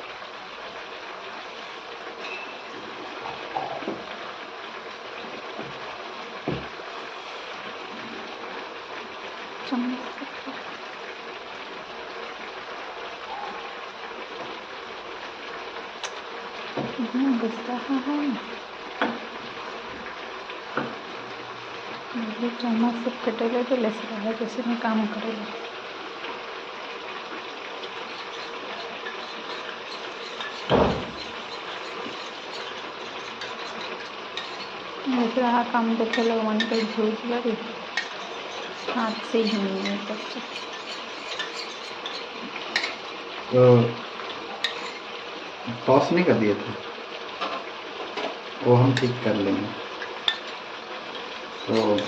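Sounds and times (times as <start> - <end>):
liquid sizzling in a pan: 0.0 - 52.0
steady hiss: 27.3 - 47.2.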